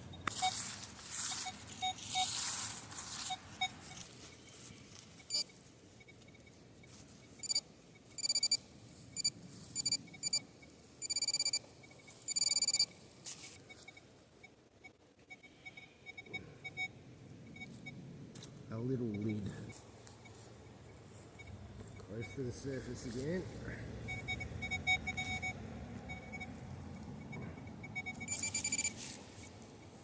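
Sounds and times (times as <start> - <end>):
rustling scraping noise: 0.0 - 7.5, 28.2 - 30.0
metal detector beeps: 0.0 - 18.0, 18.7 - 30.0.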